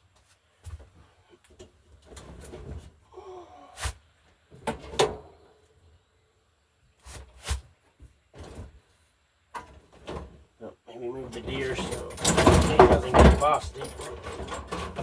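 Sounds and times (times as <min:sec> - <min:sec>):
objects scraping: 0:11.3 - 0:15.0.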